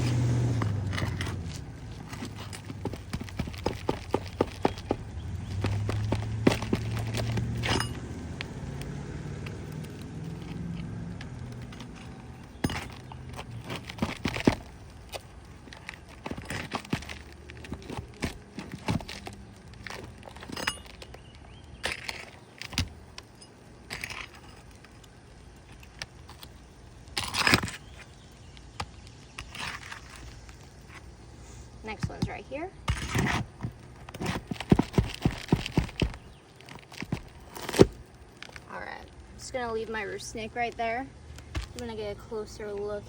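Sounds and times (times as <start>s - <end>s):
metal bar scraping shingles: 0.0s - 8.3s, 32.9s - 38.7s
low rumble: 0.0s - 13.6s.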